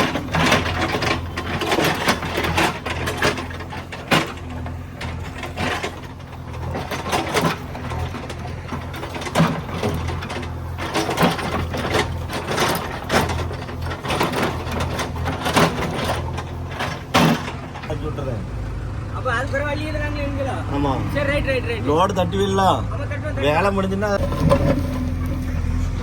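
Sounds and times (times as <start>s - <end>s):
machine clanks and knocks: 0.0s - 18.0s, 24.2s - 25.8s
diesel engine running: 0.0s - 26.0s.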